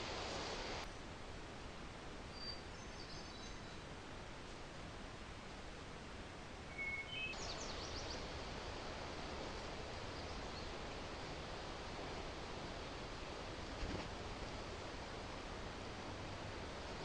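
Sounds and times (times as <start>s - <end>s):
outdoor background hiss: 0.0s - 17.0s
songbird calling: 2.3s - 3.9s, 6.7s - 8.3s.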